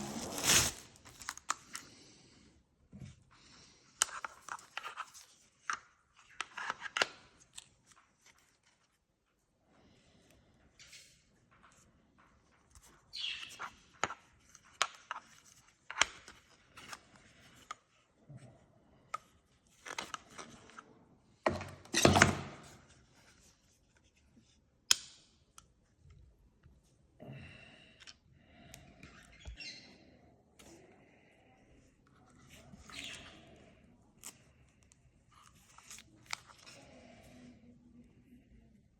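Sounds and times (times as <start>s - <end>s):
packaging rustling: 0.0s - 1.8s.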